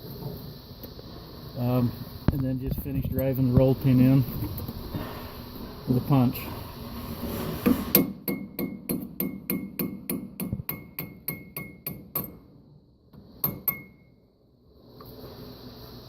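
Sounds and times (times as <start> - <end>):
hammer striking metal punch: 8.0 - 12.4, 13.4 - 14.0.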